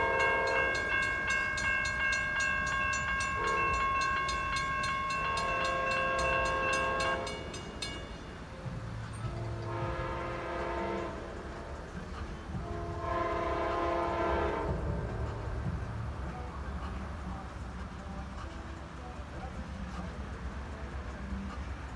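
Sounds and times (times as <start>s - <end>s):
locomotive air horn: 0.0s - 1.0s, 3.3s - 7.7s, 9.3s - 11.5s, 12.6s - 15.4s
train rumbling: 0.0s - 21.9s.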